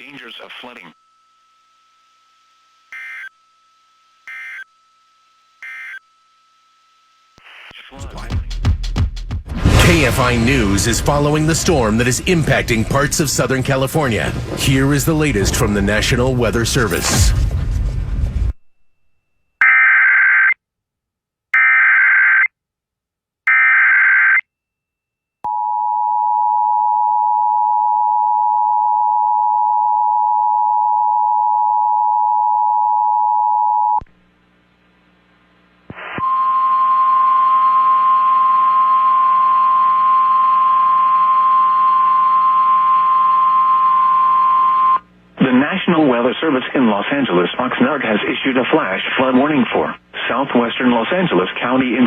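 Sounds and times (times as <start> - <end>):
two-tone attention signal: 4.3 - 4.7, 5.6 - 6.1
digital header bursts: 7.8 - 17.0
hiss and hum: 9.4 - 18.6.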